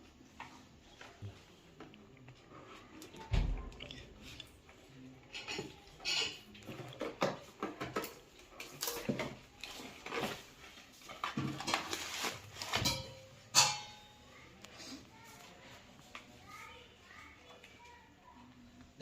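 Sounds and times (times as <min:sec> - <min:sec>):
dishes clinking: 0:05.2 - 0:12.0, 0:12.6 - 0:14.3.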